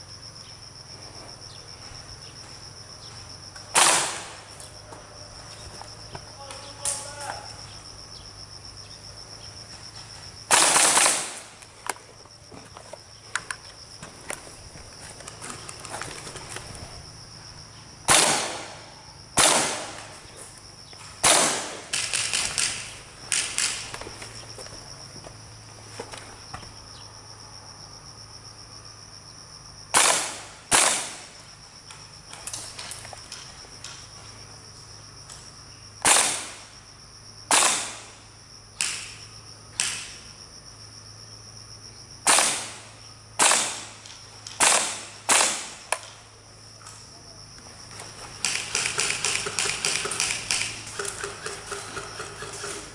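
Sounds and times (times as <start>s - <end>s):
high-pitched insect drone: 0.0s - 10.5s, 46.3s - 52.9s
airsoft gun shots: 3.7s - 4.5s, 10.5s - 11.6s, 18.1s - 20.2s, 21.2s - 23.9s, 29.9s - 31.3s, 36.0s - 36.7s, 37.5s - 38.2s, 38.8s - 39.2s, 42.2s - 46.0s, 48.4s - 52.8s.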